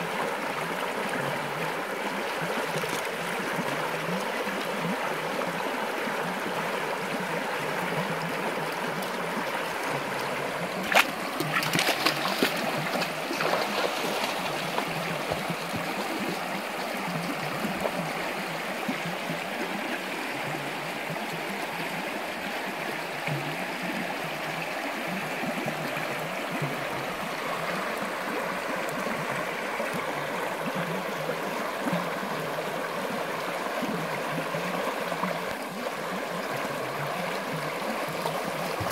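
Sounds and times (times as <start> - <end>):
water rushing and trickling: 0.0 - 38.9.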